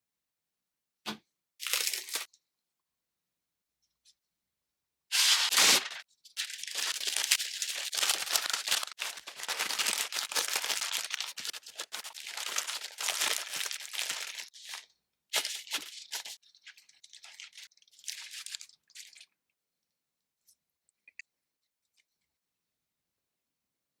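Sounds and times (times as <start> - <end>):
paper tearing: 5.1 - 14.8
paper crinkling and rustling: 5.2 - 19.3.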